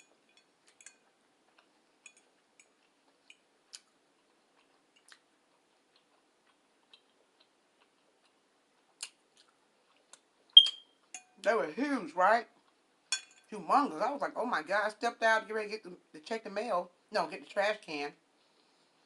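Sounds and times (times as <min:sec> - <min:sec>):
faint clicks of chewing: 0:00.0 - 0:10.3.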